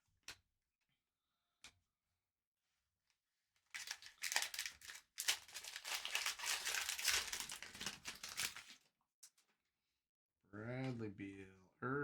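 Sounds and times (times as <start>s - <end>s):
wrapper crinkling torn open: 3.7s - 8.8s.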